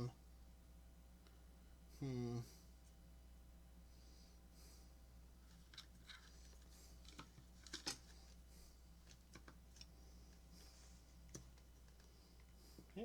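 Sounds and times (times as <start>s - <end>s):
low steady hum: 0.0s - 13.0s
small parts clicking and tapping: 5.5s - 8.1s.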